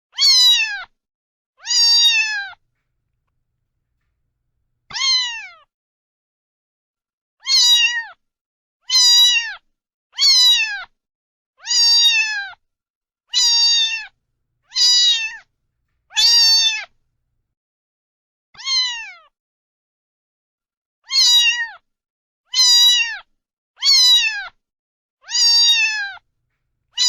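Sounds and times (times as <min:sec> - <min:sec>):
cat meowing: 0:16.1 - 0:16.9.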